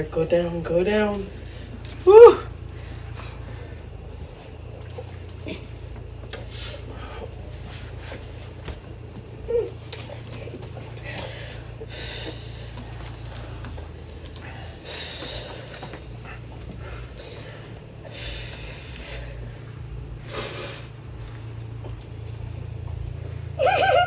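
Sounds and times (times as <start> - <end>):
steady low hum: 0.0 - 24.0
noisy nasal breaths and snorts: 2.7 - 22.0.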